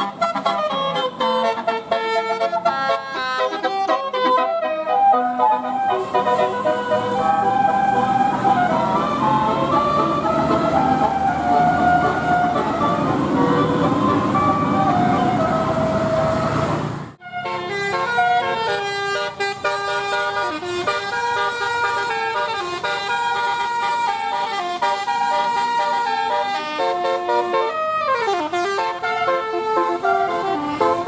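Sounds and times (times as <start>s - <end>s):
bus musical horn melody: 0.0s - 31.0s.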